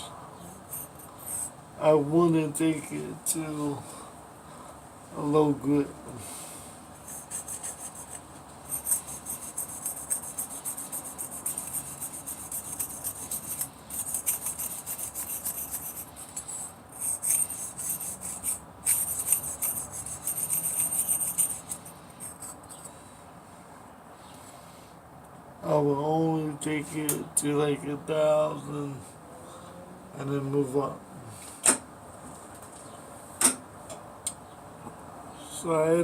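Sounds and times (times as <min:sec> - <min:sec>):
blade grinding on sharpening stone: 0:07.1 - 0:22.6.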